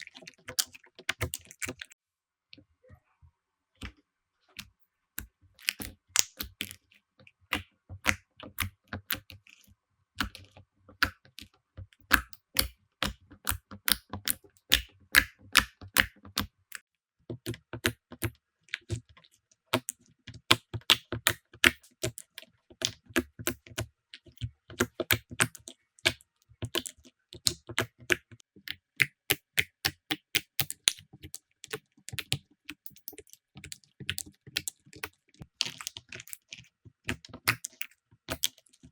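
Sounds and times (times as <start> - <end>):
slime squishing: 0.0 - 2.0, 5.6 - 16.8, 17.4 - 38.9
slime clicking and popping: 5.6 - 6.8, 7.5 - 9.5, 11.0 - 16.5, 17.4 - 19.0, 19.7 - 38.7.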